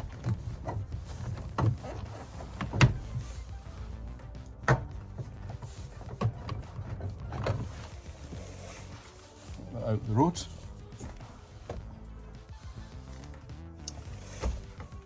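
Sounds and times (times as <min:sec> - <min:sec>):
car door armrest knocks and clicks: 0:00.0 - 0:08.1, 0:14.0 - 0:15.0
background music: 0:00.0 - 0:15.0.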